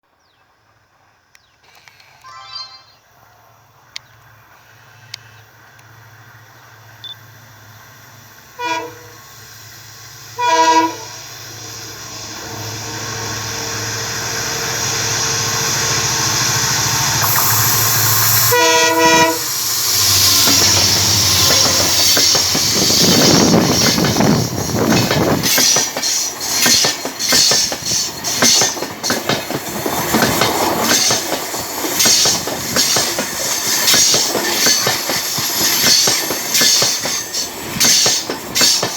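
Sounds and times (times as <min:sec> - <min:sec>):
multi-tone train horn: 0:08.5 - 0:09.3, 0:10.4 - 0:11.3, 0:17.3 - 0:22.4
locomotive engine drone: 0:11.2 - 0:25.3
train wheels clattering over rails: 0:19.8 - 0:38.9.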